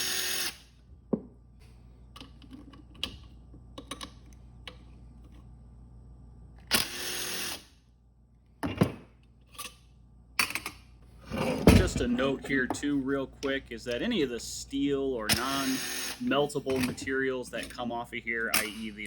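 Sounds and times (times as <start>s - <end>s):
power drill running: 0.0s - 0.6s, 6.7s - 7.6s, 15.3s - 16.8s.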